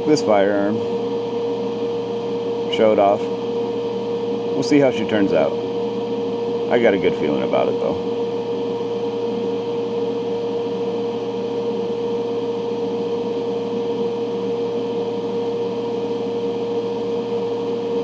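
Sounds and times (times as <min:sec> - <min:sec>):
ventilation fan humming: 0:00.0 - 0:18.0.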